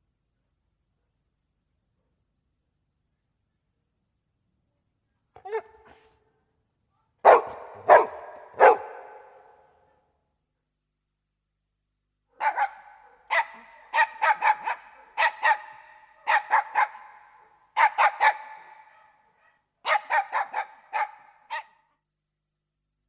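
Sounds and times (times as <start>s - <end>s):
dog barking: 5.4s - 6.2s, 7.2s - 9.7s, 12.4s - 21.9s.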